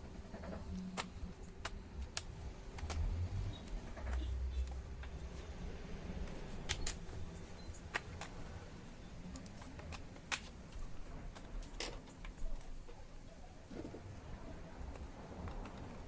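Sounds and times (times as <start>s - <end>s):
plastic clips clicking and snapping: 0.4s - 5.2s, 6.2s - 8.4s, 9.3s - 12.9s.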